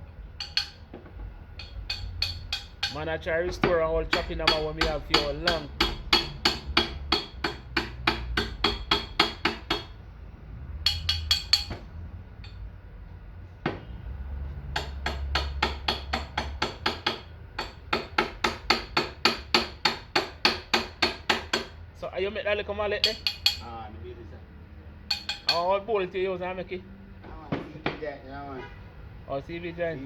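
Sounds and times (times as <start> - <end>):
mallet tapping metal pins: 0.1 - 9.9, 10.8 - 12.6, 14.7 - 21.8, 23.0 - 23.7, 25.1 - 25.8.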